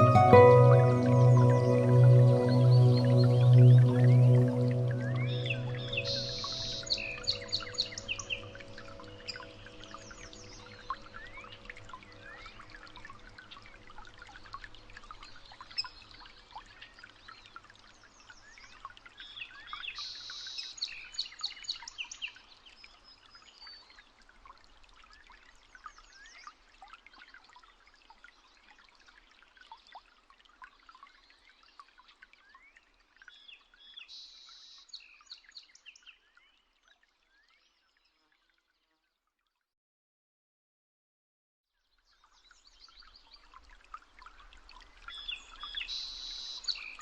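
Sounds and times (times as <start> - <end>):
birds chirping and singing: 0.0 - 10.7.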